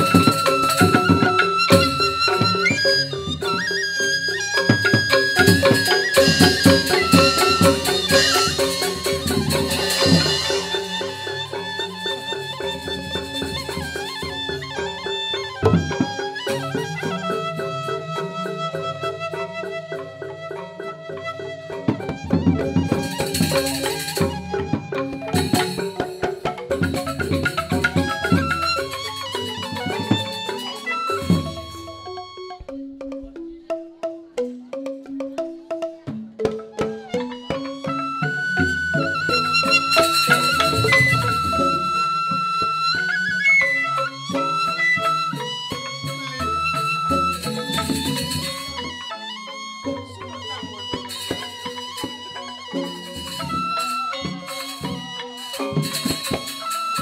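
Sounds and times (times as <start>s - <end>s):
rapid struck pitched tones: 0.0s - 14.8s, 35.0s - 49.0s
flute-like wind melody: 0.0s - 32.7s, 36.7s - 57.0s
bamboo xylophones playing: 0.0s - 57.0s
drum and cymbal percussion: 0.0s - 57.0s.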